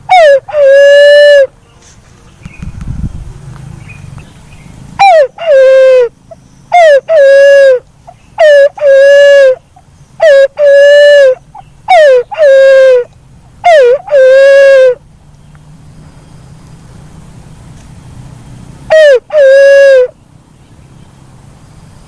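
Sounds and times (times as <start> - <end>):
fruit dove hooting: 0.0 - 1.8, 5.0 - 15.1, 18.9 - 20.2.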